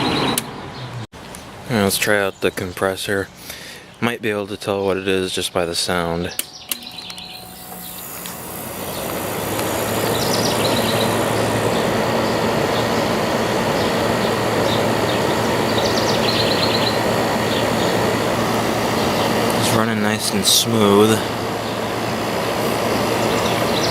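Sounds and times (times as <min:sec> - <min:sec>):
air conditioner compressor humming: 0:03.3 - 0:23.9
rush of air from fan: 0:07.4 - 0:23.9.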